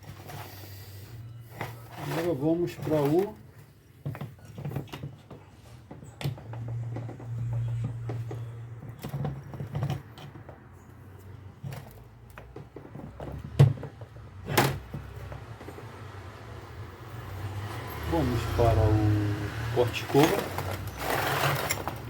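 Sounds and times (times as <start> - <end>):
metal parts clicking and knocking: 19.9 - 22.0.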